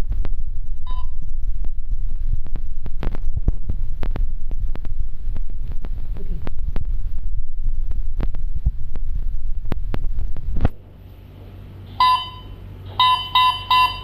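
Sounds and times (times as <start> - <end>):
microphone handling rumble: 0.0 - 11.0
short electronic beep: 0.8 - 1.2, 12.0 - 14.0.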